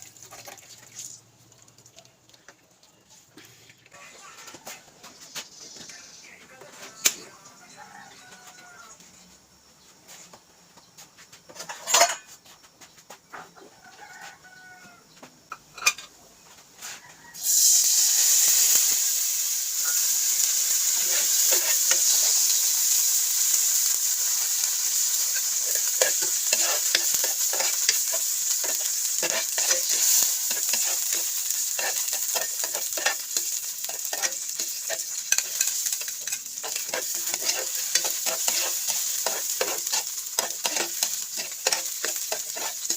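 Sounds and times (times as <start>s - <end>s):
food sizzling in hot oil: 0.0s - 3.0s, 4.0s - 9.0s, 17.2s - 42.9s
spatula clicking and scraping pan: 11.5s - 12.3s, 20.8s - 22.5s, 24.5s - 42.9s.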